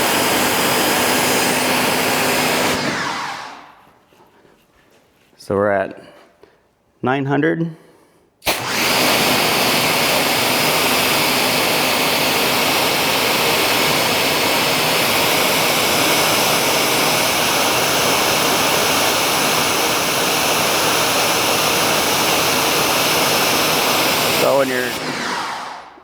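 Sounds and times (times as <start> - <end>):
pressure washers spraying: 19.6 - 26.0.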